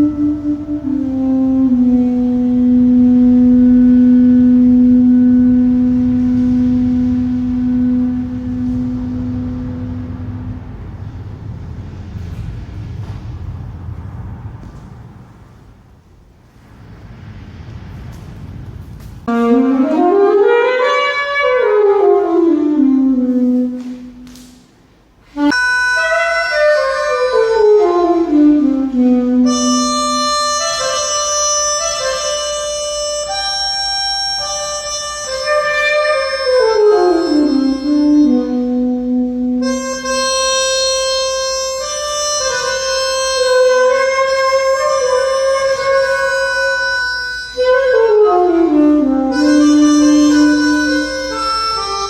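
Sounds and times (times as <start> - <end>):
improvised instrumental melody: 0.0 - 11.6, 25.4 - 52.0
long held musical note: 0.0 - 15.9, 16.8 - 24.3, 25.3 - 52.0
low rumble: 0.0 - 19.8.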